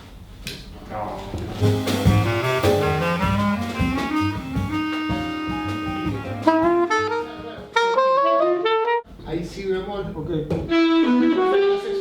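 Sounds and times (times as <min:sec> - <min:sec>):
double bass: 0:01.4 - 0:08.2
drum kit: 0:01.4 - 0:08.2
saxophones: 0:01.6 - 0:09.0.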